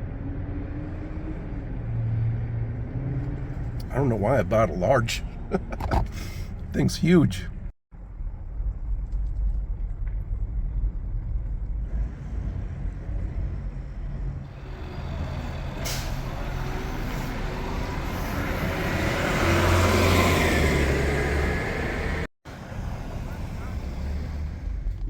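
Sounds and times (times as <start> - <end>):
low traffic rumble: 0.0 - 25.0
heavy vehicle passing: 11.9 - 25.0.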